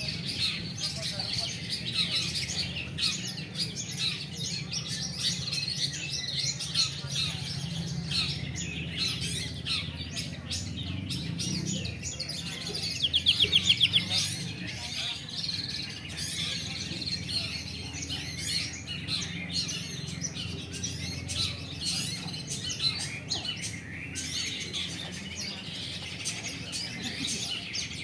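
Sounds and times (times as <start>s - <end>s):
birds chirping and calling: 0.0s - 28.0s.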